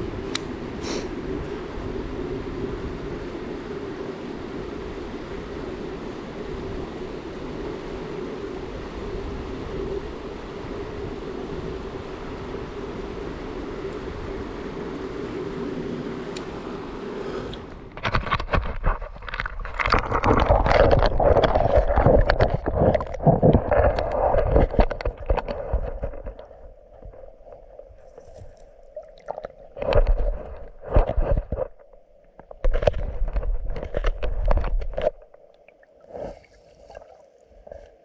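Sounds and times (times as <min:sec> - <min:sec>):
water splashing and gurgling: 0:13.8 - 0:38.0.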